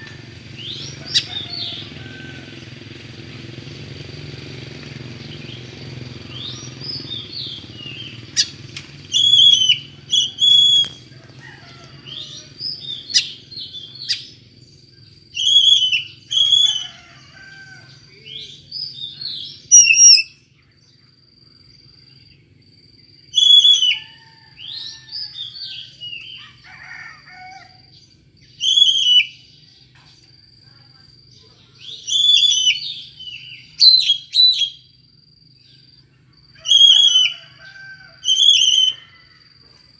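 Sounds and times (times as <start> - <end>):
quiet bird warbling: 0.0 - 21.0, 23.4 - 35.0, 35.6 - 39.9
bird singing whistled phrases: 6.3 - 11.0, 15.4 - 17.0, 18.3 - 20.4, 23.4 - 24.1, 28.6 - 29.5, 31.8 - 34.9, 36.6 - 37.4, 38.2 - 39.1.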